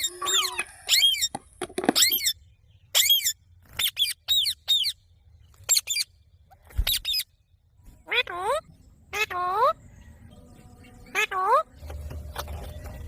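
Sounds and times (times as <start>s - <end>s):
parrot screeching: 0.0s - 1.2s.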